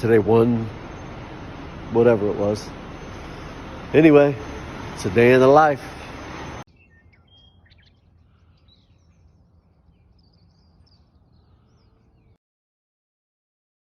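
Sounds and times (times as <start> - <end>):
birds chirping: 0.0 - 12.4.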